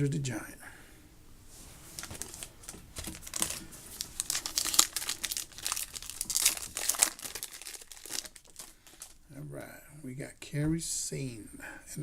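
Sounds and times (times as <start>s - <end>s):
wrapper tearing and crinkling: 2.0s - 9.2s.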